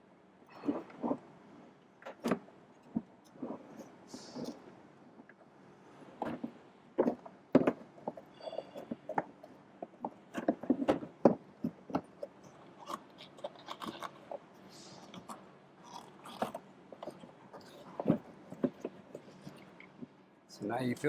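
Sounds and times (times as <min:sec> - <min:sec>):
high squeak: 0:08.3 - 0:08.9.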